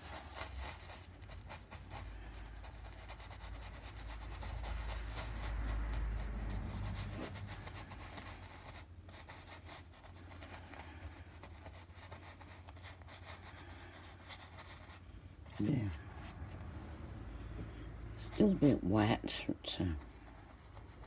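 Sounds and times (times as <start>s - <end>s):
paintbrush scratching on canvas: 0.0s - 16.8s, 18.1s - 21.0s
low rumble: 4.4s - 8.8s, 15.1s - 19.0s.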